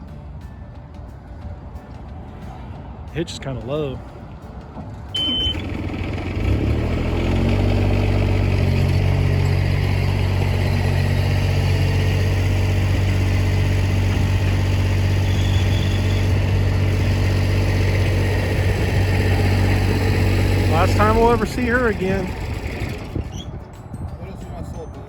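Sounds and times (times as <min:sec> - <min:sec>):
vehicle engine droning: 0:04.7 - 0:23.8
short high beep: 0:05.2 - 0:05.6.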